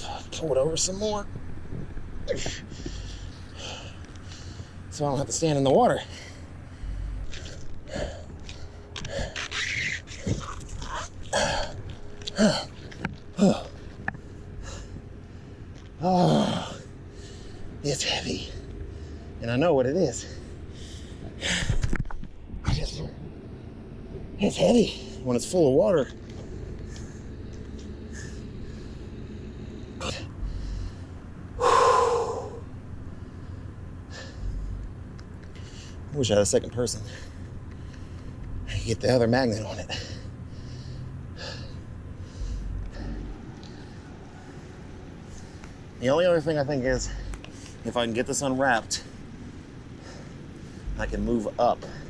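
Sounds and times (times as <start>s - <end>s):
steady low rumble: 0.0s - 52.0s
man breathing hard: 2.2s - 4.9s, 5.9s - 17.8s, 18.4s - 19.4s, 20.2s - 22.0s, 26.3s - 36.1s, 37.0s - 38.7s, 39.8s - 46.0s, 49.0s - 51.0s
man grunting: 13.4s - 13.8s, 16.0s - 16.8s.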